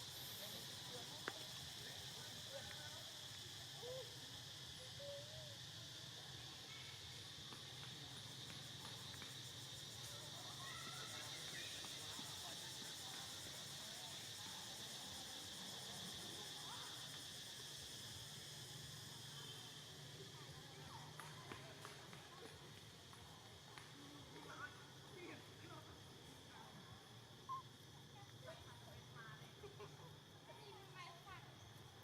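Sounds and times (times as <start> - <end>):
insect chorus buzzing: 0.0 - 32.0.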